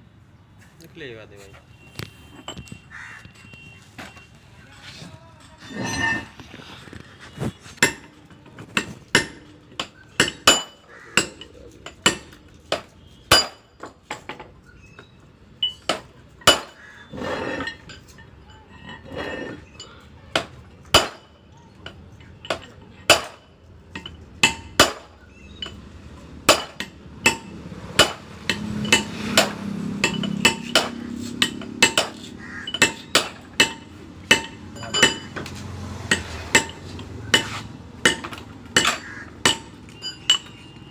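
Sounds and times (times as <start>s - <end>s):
hammer striking metal: 8.8s - 13.9s, 22.5s - 25.8s, 26.4s - 40.8s.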